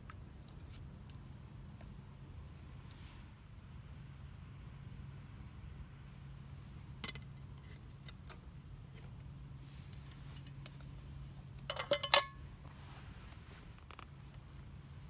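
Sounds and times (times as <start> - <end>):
metal cookware clinking: 11.7 - 12.4.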